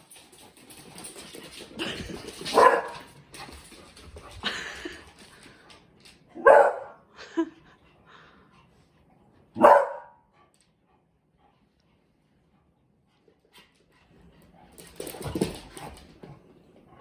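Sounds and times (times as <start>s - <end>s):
dog barking: 2.5s - 3.1s, 6.4s - 7.0s, 9.6s - 10.2s.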